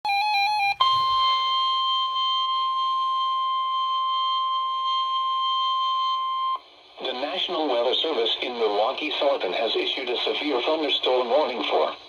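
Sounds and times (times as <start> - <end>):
steady high alarm tone: 0.4 - 6.6.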